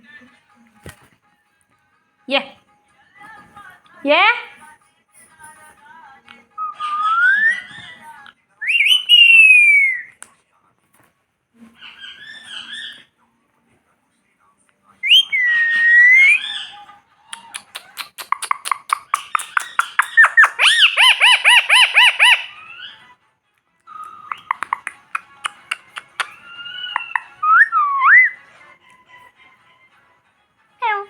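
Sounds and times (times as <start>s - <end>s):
parrot whistling and clicking: 8.7s - 10.0s, 15.0s - 16.6s, 17.3s - 22.6s, 23.9s - 28.4s.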